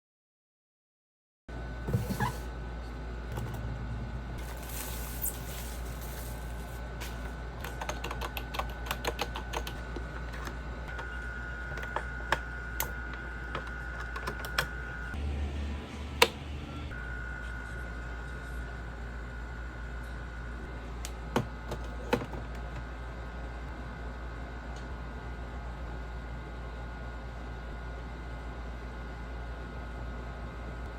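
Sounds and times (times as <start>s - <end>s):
keyboard keys clicking: 7.6s - 9.8s, 13.6s - 14.7s.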